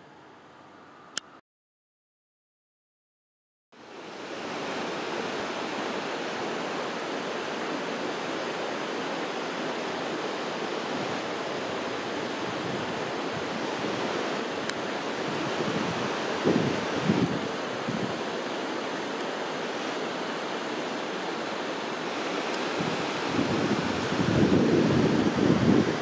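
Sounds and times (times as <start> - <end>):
water rushing: 3.8 - 26.0.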